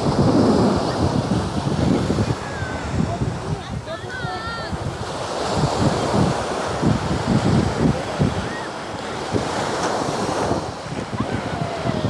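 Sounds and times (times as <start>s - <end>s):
ocean surf breaking: 0.0s - 12.0s
wind buffeting microphone: 0.0s - 12.0s.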